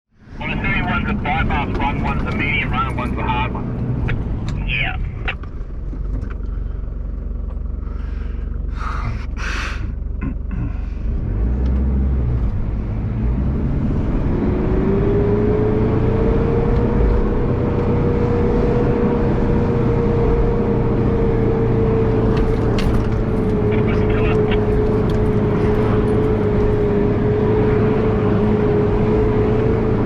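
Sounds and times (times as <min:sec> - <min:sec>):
engine running under load: 0:00.2 - 0:30.0
steady whine: 0:22.8 - 0:26.9.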